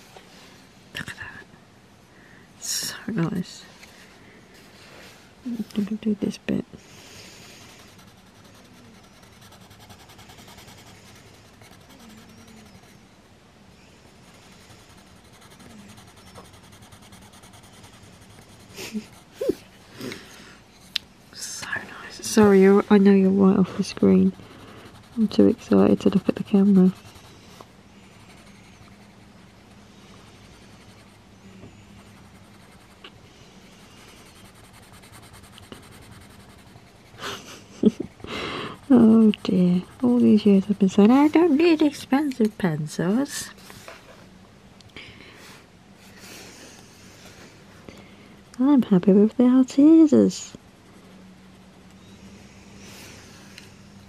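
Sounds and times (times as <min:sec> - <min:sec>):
faint steady hum: 0:00.0 - 0:54.0
pencil scratching on paper: 0:07.6 - 0:13.0, 0:14.2 - 0:19.6, 0:22.2 - 0:33.0, 0:33.6 - 0:37.2, 0:38.0 - 0:43.4.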